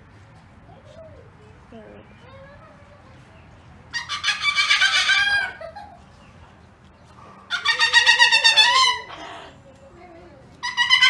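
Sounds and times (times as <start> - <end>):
loud bird calls: 3.9 - 6.4, 7.3 - 9.5, 10.6 - 11.0.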